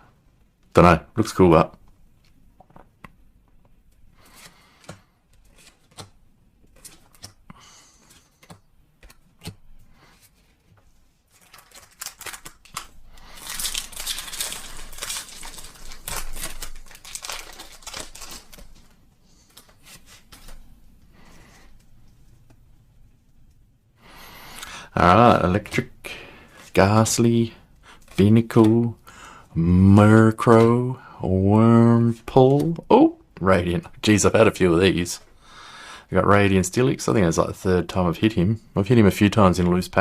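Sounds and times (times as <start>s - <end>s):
handling noises and light clicks: 1.7s - 23.7s
foil wrapper tearing and crinkling: 11.3s - 18.9s.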